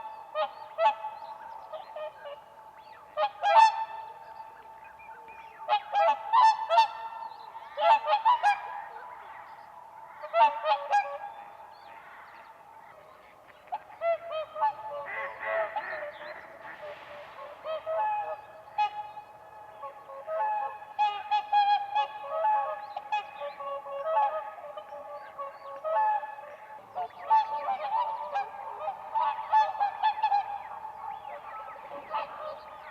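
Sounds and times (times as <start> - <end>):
swans trumpeting honks: 3.1 - 4.2, 5.6 - 7.2, 7.8 - 9.2, 10.2 - 11.4, 14.0 - 32.9.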